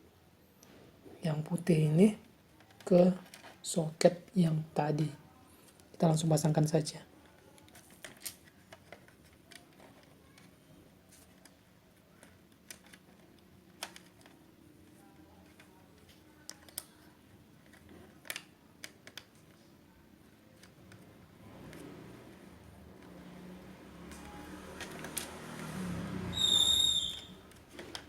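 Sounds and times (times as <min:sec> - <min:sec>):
small clicks and taps: 0:17.6 - 0:19.6.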